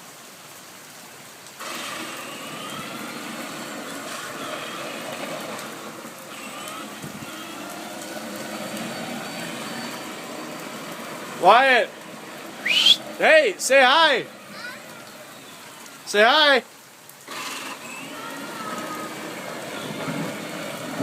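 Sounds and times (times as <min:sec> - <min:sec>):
heavy rain falling: 0:00.0 - 0:21.0
toy tractor motor whining: 0:01.6 - 0:13.0, 0:17.2 - 0:21.0.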